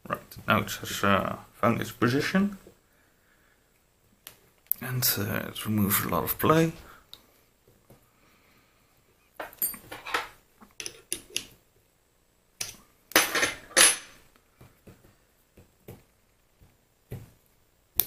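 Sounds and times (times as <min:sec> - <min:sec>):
metal parts clinking and scraping: 0:09.4 - 0:11.5, 0:12.6 - 0:14.2.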